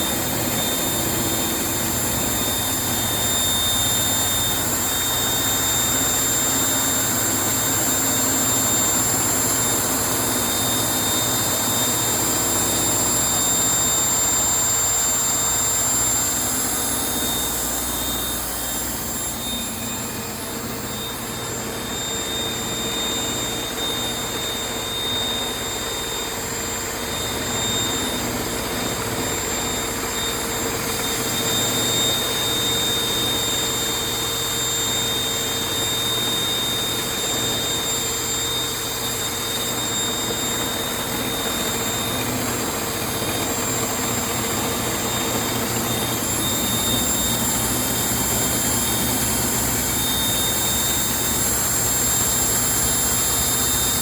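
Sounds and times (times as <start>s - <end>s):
machine whine: 0.0s - 54.0s.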